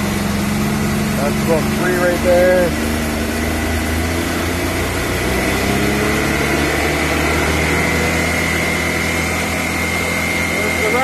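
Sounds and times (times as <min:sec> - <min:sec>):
engine revving in neutral: 0:00.0 - 0:11.0
high whine: 0:00.0 - 0:11.0.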